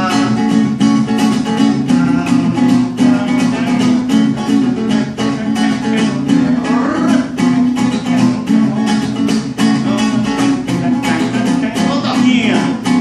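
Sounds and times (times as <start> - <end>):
acoustic guitar strumming: 0.0 - 13.0.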